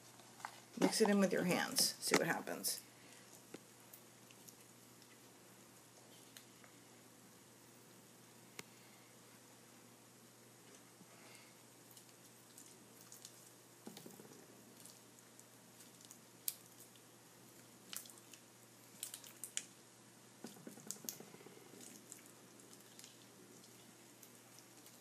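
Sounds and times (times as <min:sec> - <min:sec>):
slime squelching: 0:11.8 - 0:19.8, 0:20.4 - 0:25.0.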